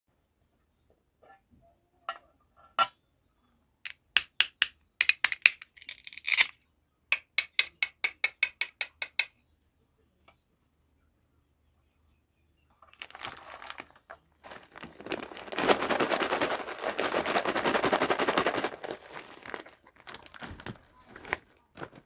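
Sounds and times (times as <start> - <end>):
small hard pieces clinking: 12.9 - 22.0.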